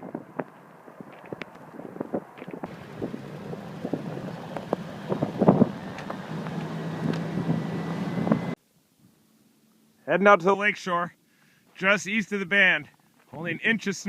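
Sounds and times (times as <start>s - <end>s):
wind noise: 0.0s - 8.6s
vehicle engine hum: 0.1s - 8.6s.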